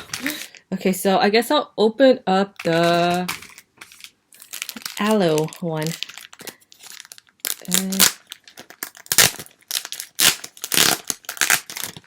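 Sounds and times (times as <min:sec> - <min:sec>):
plastic packaging crinkling: 0:02.6 - 0:12.0.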